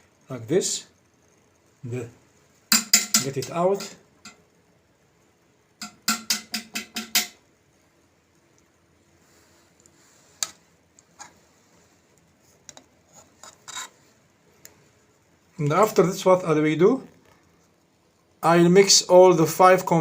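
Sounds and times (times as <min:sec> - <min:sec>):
spoon clinking against a pot: 0:02.7 - 0:04.4, 0:05.8 - 0:07.4.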